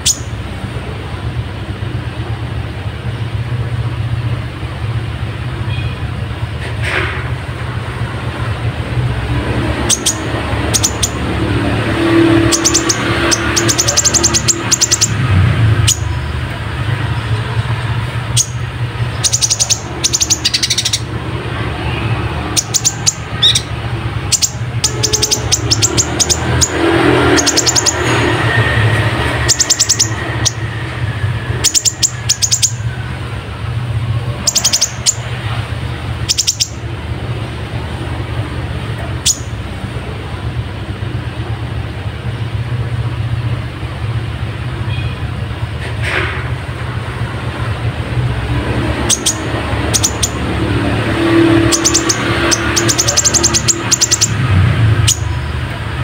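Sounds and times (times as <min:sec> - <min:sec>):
bird chirping song: 0:00.0 - 0:00.4, 0:09.4 - 0:33.0, 0:34.2 - 0:38.2, 0:39.0 - 0:39.6, 0:48.4 - 0:55.7.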